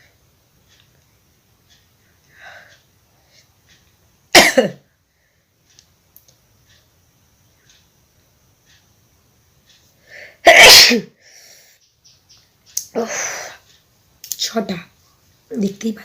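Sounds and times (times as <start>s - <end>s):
woman coughing: 4.4s - 4.8s, 10.4s - 11.2s.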